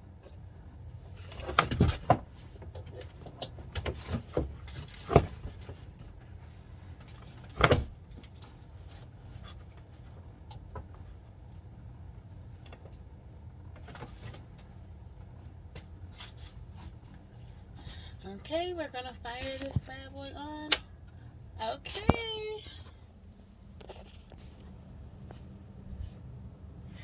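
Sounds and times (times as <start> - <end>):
low steady hum: 0.0 - 27.0
knocks and clunks of handling: 1.3 - 6.2.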